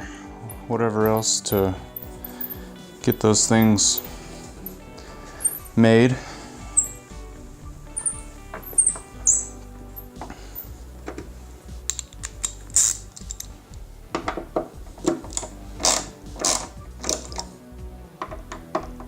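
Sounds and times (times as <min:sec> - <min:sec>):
faint background music: 0:00.0 - 0:19.0
metallic clicks of hand tools: 0:11.9 - 0:13.6, 0:15.0 - 0:17.6.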